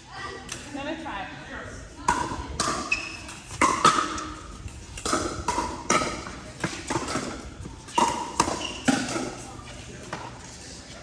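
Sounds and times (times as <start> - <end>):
paddles hitting plastic ball: 2.1 - 9.4.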